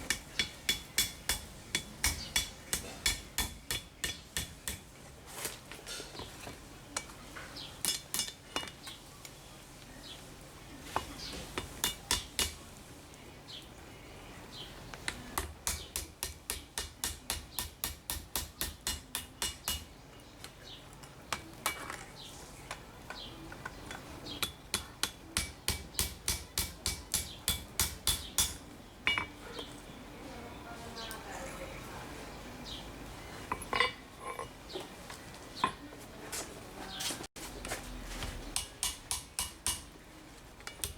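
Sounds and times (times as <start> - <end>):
hammer striking steel on anvil: 0.0 - 4.9, 7.8 - 8.7, 11.8 - 12.6, 15.4 - 19.9, 24.4 - 29.4, 38.6 - 39.9.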